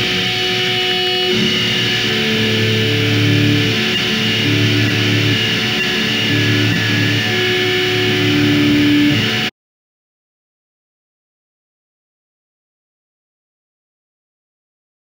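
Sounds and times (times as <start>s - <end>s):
noise rock electric guitar: 0.0s - 9.5s.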